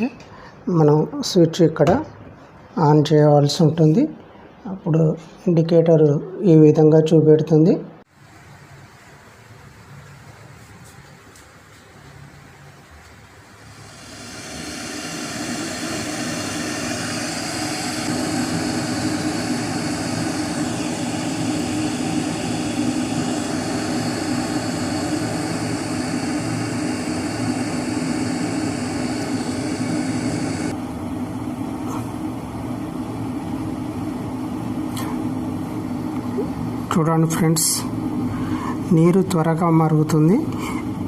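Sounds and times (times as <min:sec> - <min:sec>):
electric kettle heating water: 0:13.4 - 0:38.3.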